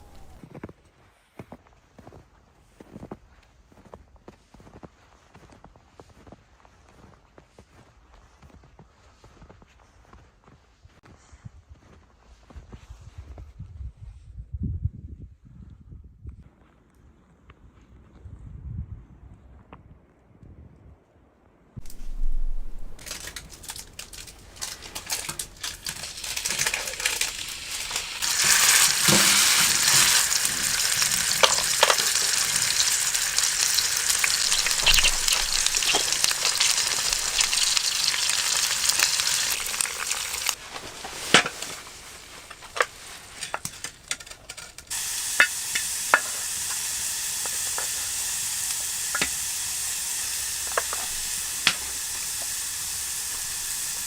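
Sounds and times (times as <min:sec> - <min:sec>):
food sizzling: 0:00.0 - 0:00.4, 0:21.8 - 0:54.0
oil popping and spitting: 0:23.0 - 0:42.9, 0:44.9 - 0:54.0.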